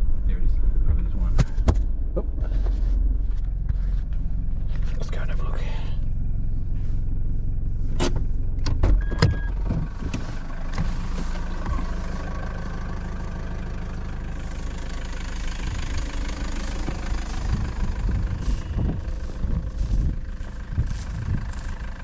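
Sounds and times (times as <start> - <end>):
vehicle engine running: 0.0 - 22.0
short beep: 9.0 - 9.6.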